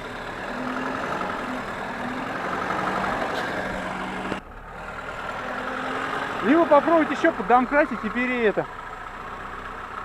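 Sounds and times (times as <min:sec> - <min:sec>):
car engine running steadily: 0:00.0 - 0:10.0.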